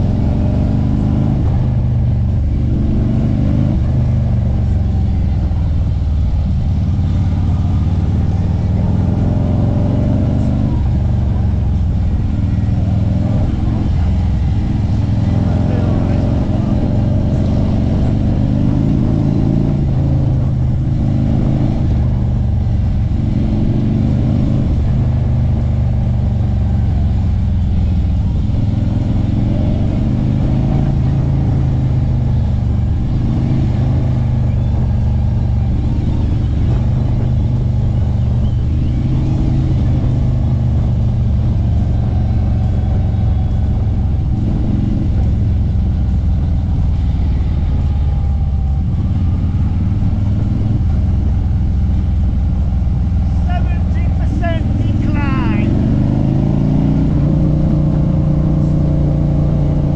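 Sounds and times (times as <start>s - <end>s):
motorcycle engine running: 0.0s - 59.9s.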